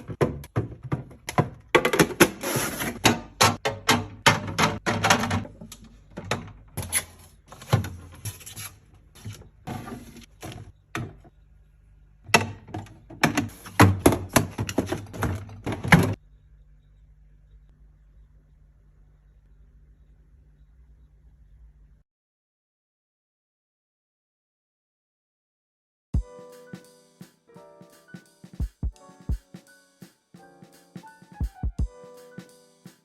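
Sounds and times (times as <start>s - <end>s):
packaged drinks clattering: 12.3s - 16.2s
low steady hum: 16.2s - 22.0s.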